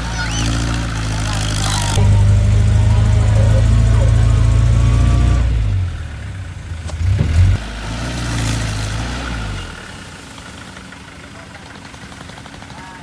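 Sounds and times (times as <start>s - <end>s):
jeep engine running: 1.9s - 7.6s.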